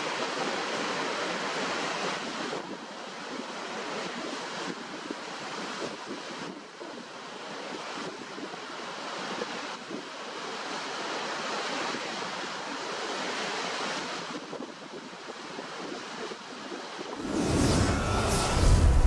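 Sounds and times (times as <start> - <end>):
waterfall rushing: 17.2 - 19.0.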